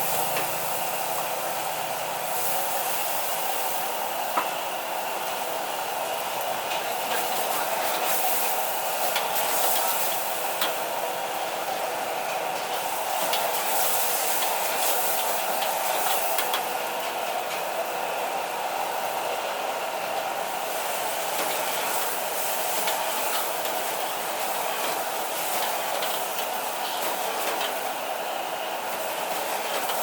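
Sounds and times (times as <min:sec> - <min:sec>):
gas burner rushing: 0:00.0 - 0:30.0
vegetables sizzling in a wok: 0:00.0 - 0:30.0.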